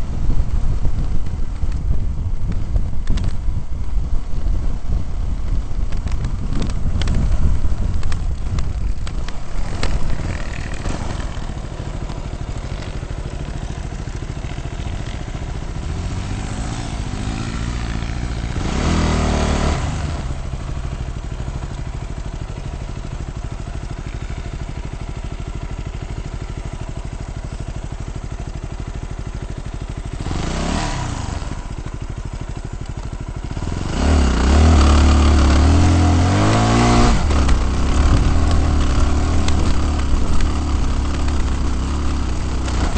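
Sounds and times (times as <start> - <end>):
off-road vehicle engine revving: 9.3 - 13.7, 14.4 - 20.6, 30.1 - 31.9, 33.4 - 42.9.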